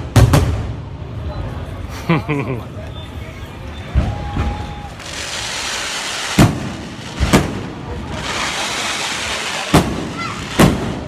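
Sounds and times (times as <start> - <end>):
fireworks exploding bangs: 0.0 - 1.0, 3.9 - 11.0.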